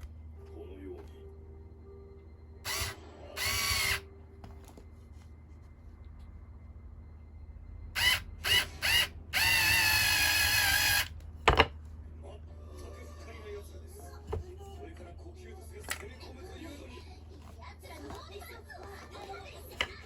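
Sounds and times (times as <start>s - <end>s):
electric drill bursts: 2.6s - 4.0s, 7.9s - 11.1s.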